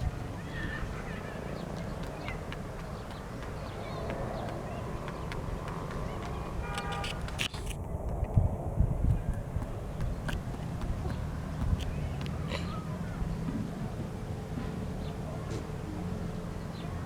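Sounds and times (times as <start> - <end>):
low rumble: 7.7 - 11.7.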